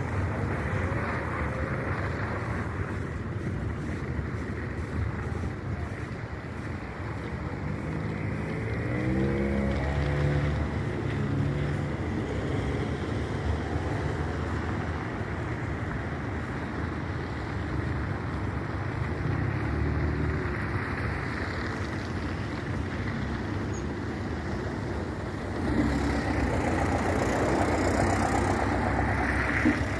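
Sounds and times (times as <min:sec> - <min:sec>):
steady rushing noise: 0:00.0 - 0:29.9
vehicle engine revving: 0:07.5 - 0:13.3, 0:25.5 - 0:29.9.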